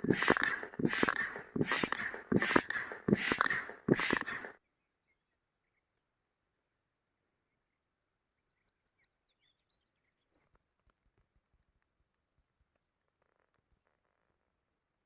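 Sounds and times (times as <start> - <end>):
faint bird chirps: 7.4 - 10.7.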